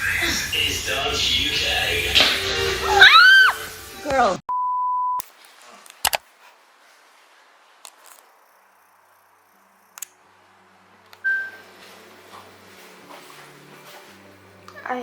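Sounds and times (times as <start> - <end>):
sharp clicks: 9.8 - 10.2
short high beep: 11.2 - 11.7.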